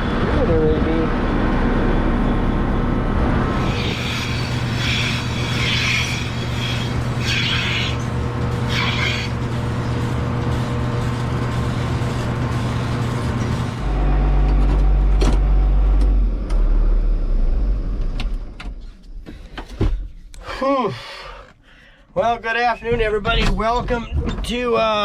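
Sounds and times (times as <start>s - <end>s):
tractor engine running: 1.0s - 16.8s
hissing clatter: 3.6s - 13.8s.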